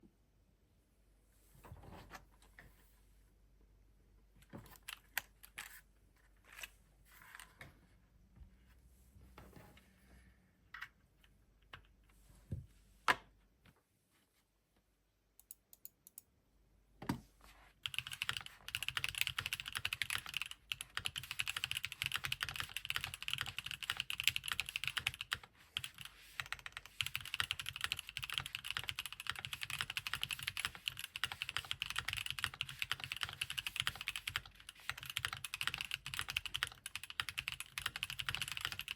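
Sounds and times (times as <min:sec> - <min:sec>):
mechanical keyboard typing: 0:17.8 - 0:38.9.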